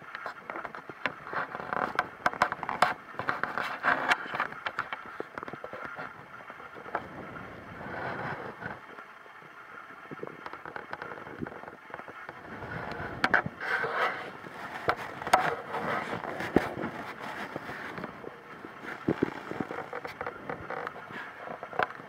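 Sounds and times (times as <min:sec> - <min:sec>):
stomach gurgling: 0:14.8 - 0:22.0.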